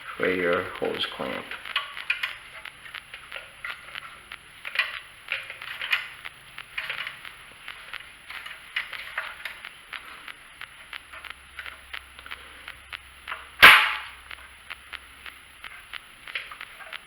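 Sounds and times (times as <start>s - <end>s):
sharp loud clack: 13.6s - 14.2s.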